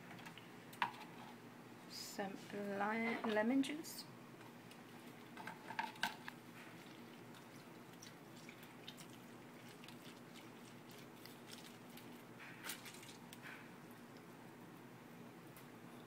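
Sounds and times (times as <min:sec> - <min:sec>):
small ticks and squishy sounds: 0:04.4 - 0:13.5.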